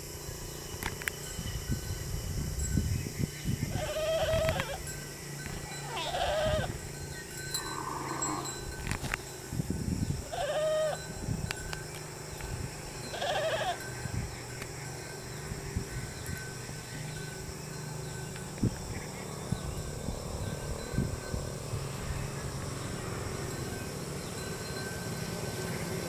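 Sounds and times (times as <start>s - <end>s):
goats bleating: 3.8s - 4.8s, 5.9s - 6.7s, 10.3s - 11.0s, 13.1s - 13.8s.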